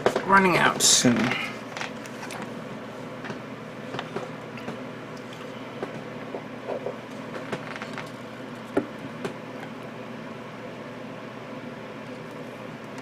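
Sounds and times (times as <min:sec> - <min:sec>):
steady low hum: 0:00.0 - 0:13.0
liquid pouring: 0:04.5 - 0:07.1.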